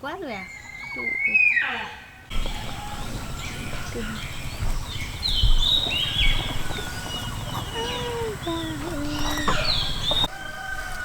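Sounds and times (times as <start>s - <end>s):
birds chirping: 0.0s - 11.0s
low thumps: 2.3s - 10.3s.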